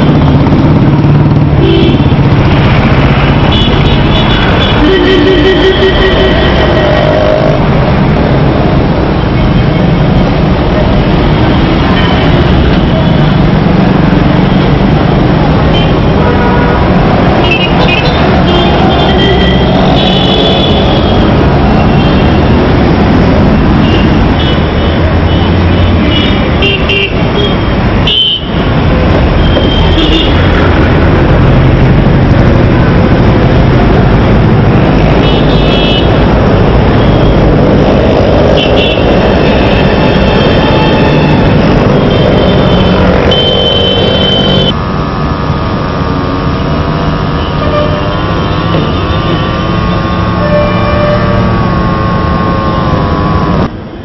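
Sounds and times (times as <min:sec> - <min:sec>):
road traffic noise: 0:00.0 - 0:54.0
vehicle horns: 0:01.6 - 0:02.3, 0:03.4 - 0:07.6, 0:15.6 - 0:23.1, 0:23.7 - 0:30.8, 0:34.8 - 0:37.5, 0:38.4 - 0:44.8, 0:46.6 - 0:53.7.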